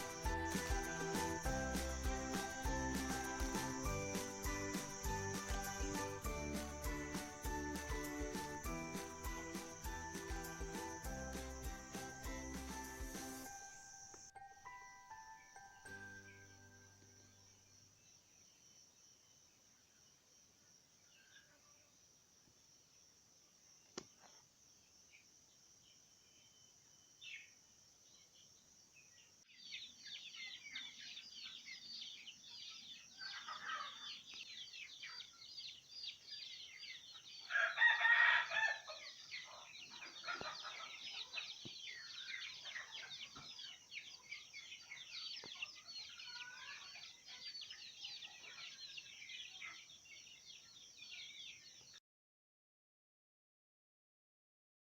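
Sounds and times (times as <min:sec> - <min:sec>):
chickens calling: 0:00.0 - 0:13.5, 0:29.8 - 0:51.5
high peeping of chicks: 0:29.6 - 0:52.0
rooster crow: 0:37.4 - 0:39.2.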